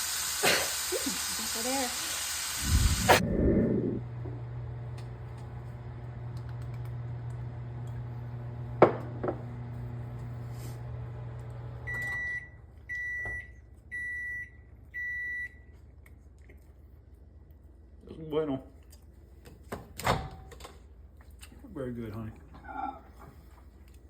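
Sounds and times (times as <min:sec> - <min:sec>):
microwave oven humming: 0:00.0 - 0:15.6
microwave beeps: 0:11.8 - 0:15.7.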